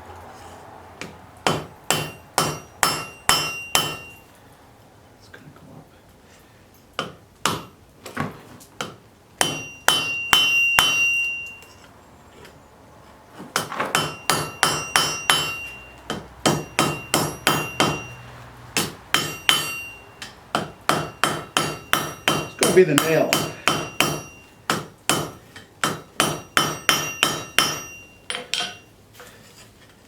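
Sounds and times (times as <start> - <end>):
hammer striking metal on anvil: 1.4 - 4.2, 7.0 - 7.8, 8.8 - 11.7, 13.6 - 28.9
anvil ringing high tone: 2.0 - 4.3, 9.4 - 11.8, 14.0 - 18.3, 19.1 - 20.3, 21.0 - 24.6, 26.3 - 28.9.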